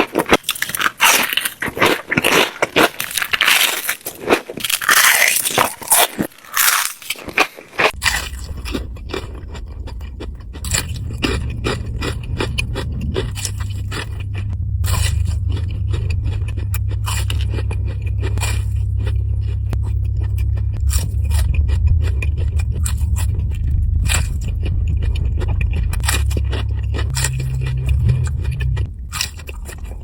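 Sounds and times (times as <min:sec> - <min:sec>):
crunchy chewing of fried food: 0:00.0 - 0:30.0
low rumble: 0:08.0 - 0:30.0.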